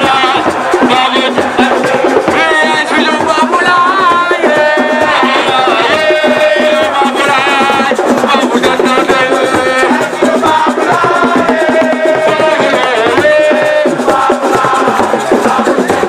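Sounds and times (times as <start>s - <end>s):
busy drumming: 0.0s - 16.0s
person singing: 0.0s - 16.0s.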